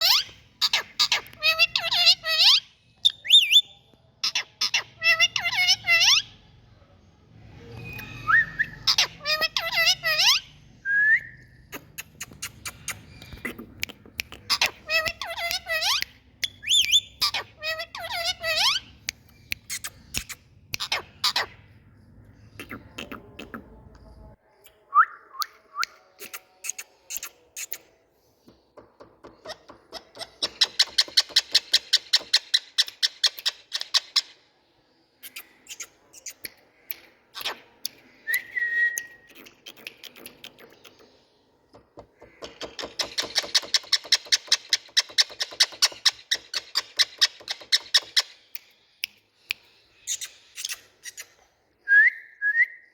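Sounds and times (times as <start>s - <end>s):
parakeet clicking chatter: 0.0s - 2.6s, 11.7s - 21.5s, 28.8s - 34.3s, 39.3s - 41.1s, 41.8s - 49.2s
parakeet chirps and whistles: 14.5s - 21.5s.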